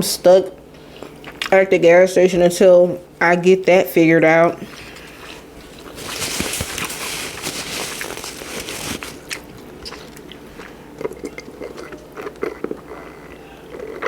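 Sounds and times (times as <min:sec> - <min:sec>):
person chewing crunchy food: 0:04.7 - 0:14.0.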